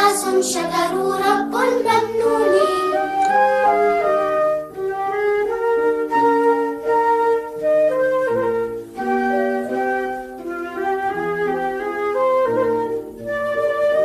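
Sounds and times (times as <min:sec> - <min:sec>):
flute-like melody: 0:00.0 - 0:14.0
sustained accompaniment and bass: 0:00.0 - 0:14.0.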